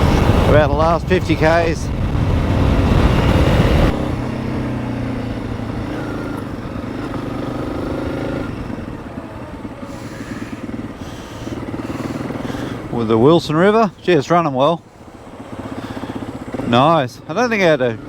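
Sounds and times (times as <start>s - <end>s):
wind rushing over microphone: 0.0s - 9.8s
motorcycle engine running: 0.0s - 18.0s.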